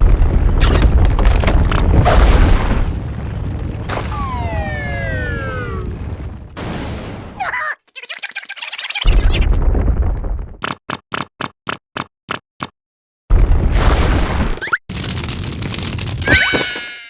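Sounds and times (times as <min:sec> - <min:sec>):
cartoon rumbling crash boom: 0:00.0 - 0:07.4, 0:09.1 - 0:10.6
falling pitched glide: 0:04.0 - 0:06.1.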